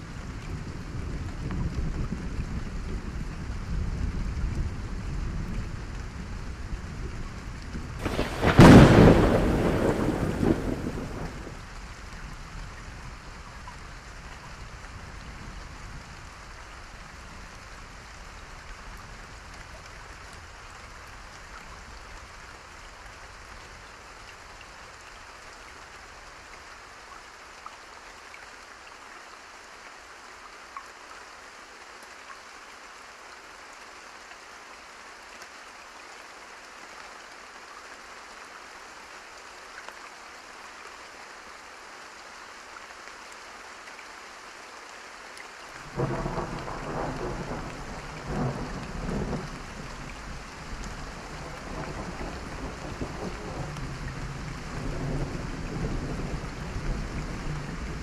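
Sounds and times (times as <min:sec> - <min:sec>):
steady rain: 0:00.0 - 0:58.0
thunder rumbling: 0:07.9 - 0:11.6, 0:45.9 - 0:58.0.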